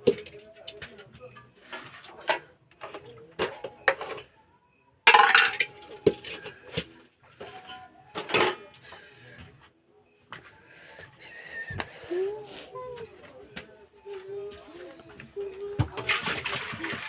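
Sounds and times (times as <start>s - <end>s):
metal pots and utensils clanking: 5.1s - 8.7s.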